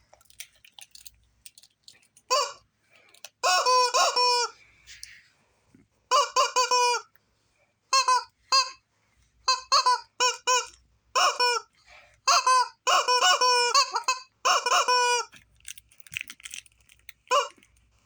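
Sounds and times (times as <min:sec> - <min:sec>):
squeaky honking squawks: 0:02.3 - 0:02.6, 0:03.4 - 0:04.6, 0:06.1 - 0:07.1, 0:07.9 - 0:08.8, 0:09.5 - 0:11.7, 0:12.3 - 0:15.3, 0:17.3 - 0:17.6.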